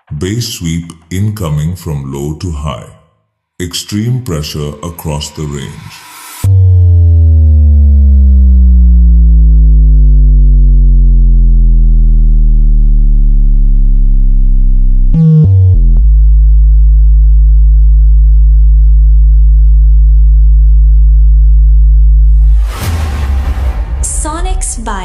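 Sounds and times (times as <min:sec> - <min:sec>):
deep bass tone from subwoofer: 0:06.4 - 0:23.3.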